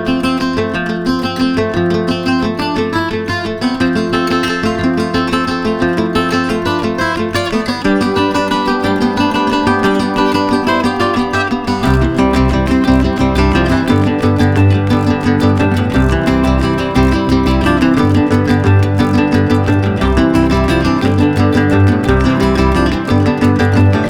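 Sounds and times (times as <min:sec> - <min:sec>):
strummed acoustic guitar: 0:00.0 - 0:24.0
deep bass line: 0:11.8 - 0:24.0.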